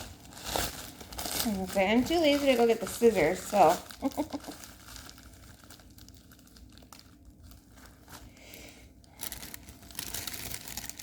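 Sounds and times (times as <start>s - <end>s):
packaging torn open by hand: 9.2s - 11.0s.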